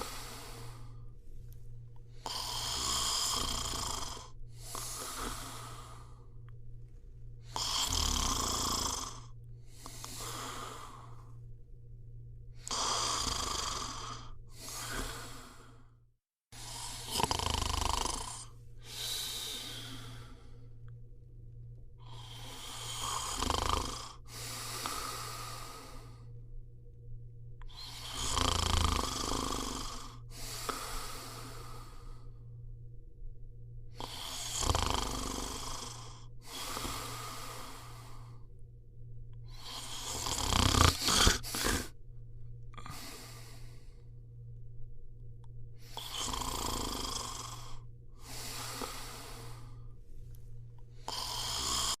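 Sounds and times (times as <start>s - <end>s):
person snoring: 0.0s - 1.1s, 2.1s - 6.5s, 7.4s - 11.4s, 12.6s - 16.0s, 16.6s - 20.9s, 22.0s - 26.3s, 27.6s - 32.5s, 33.9s - 38.5s, 39.4s - 42.0s, 42.7s - 44.1s, 45.8s - 49.9s, 51.0s - 52.0s.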